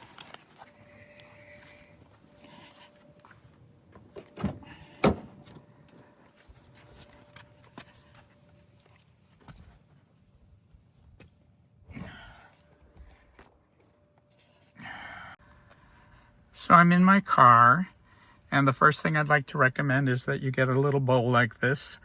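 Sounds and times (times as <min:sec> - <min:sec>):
car door shutting: 0:04.0 - 0:05.7.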